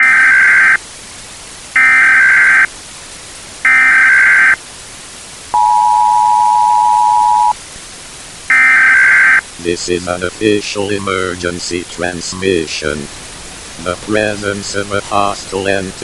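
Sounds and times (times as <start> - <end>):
high data tone bursts: 0.0 - 0.8, 1.8 - 2.7, 3.6 - 4.6, 5.5 - 7.6, 8.5 - 9.5
two-tone attention signal: 0.0 - 0.8, 1.8 - 2.7, 3.7 - 4.6, 5.6 - 7.6, 8.5 - 9.4
static hiss: 0.0 - 16.0.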